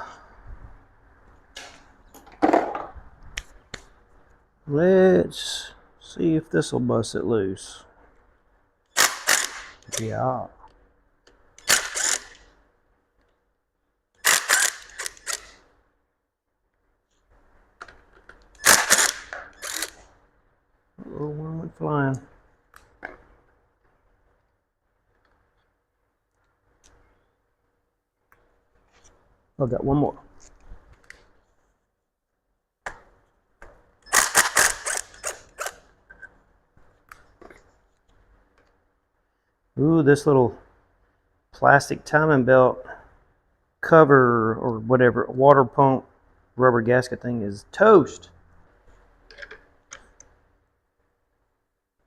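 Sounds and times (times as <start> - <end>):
ratchet wrench clicking: 9.0 - 10.1, 11.6 - 12.4, 14.2 - 15.6, 18.6 - 20.0.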